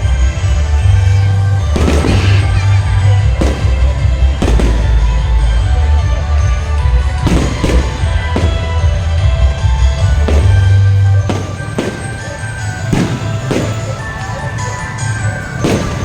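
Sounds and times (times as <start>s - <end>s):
loud music with heavy bass: 0.0s - 11.9s
fireworks bangs: 0.0s - 16.0s.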